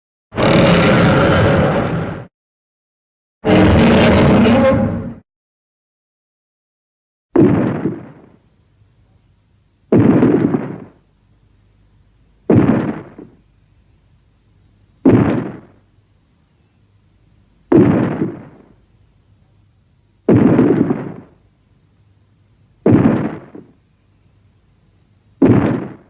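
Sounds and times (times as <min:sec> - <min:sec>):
dinosaur roar sound effect: 0:00.3 - 0:02.3, 0:03.4 - 0:05.2.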